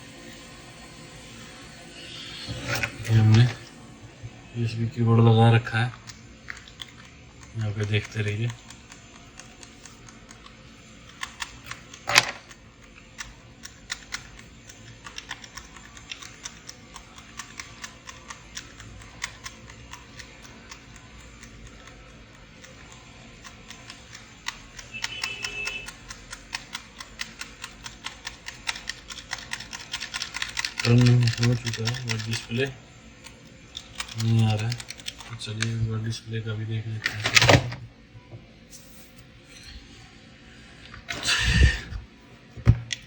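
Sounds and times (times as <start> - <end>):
keyboard keys clicking: 6.0 - 32.7.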